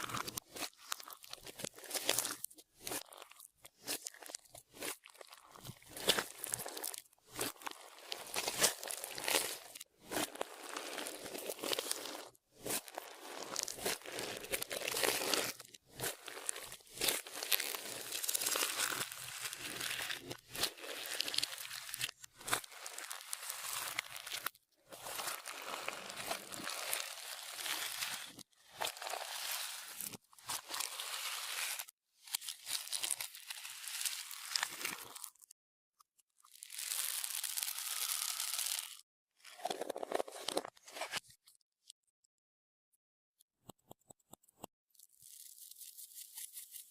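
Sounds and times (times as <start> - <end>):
slime squished by hand: 0.1 - 35.3.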